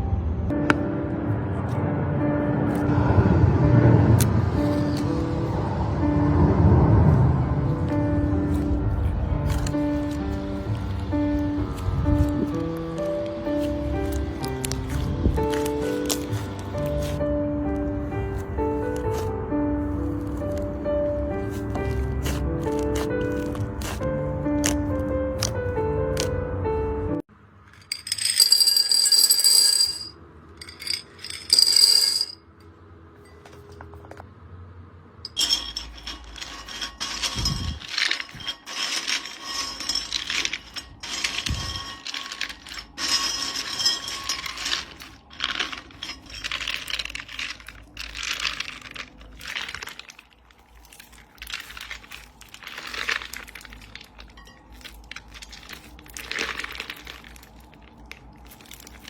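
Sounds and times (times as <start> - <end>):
crunchy slime crackling: 7.7 - 26.3, 44.3 - 59.0.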